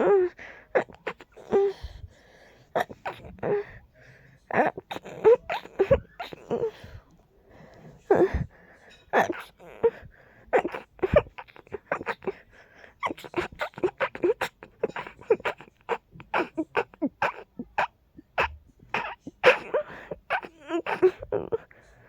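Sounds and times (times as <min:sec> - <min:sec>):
person stifling sneezes: 0:04.5 - 0:07.0, 0:13.0 - 0:21.6.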